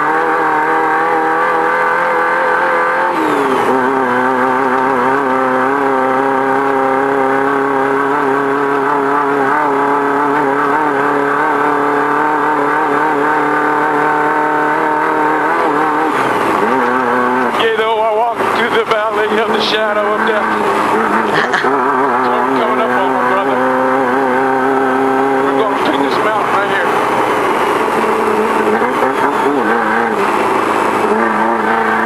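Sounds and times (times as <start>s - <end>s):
race car engine revving high: 0.0s - 32.0s.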